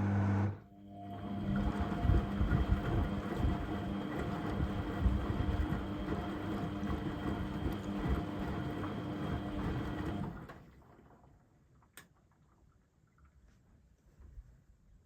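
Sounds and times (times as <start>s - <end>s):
washing machine motor hum: 0.0s - 11.0s.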